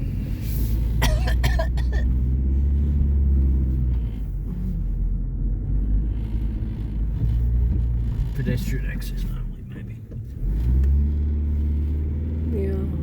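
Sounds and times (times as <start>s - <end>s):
car engine and road noise: 0.0s - 13.0s
passenger coughing: 0.9s - 2.2s.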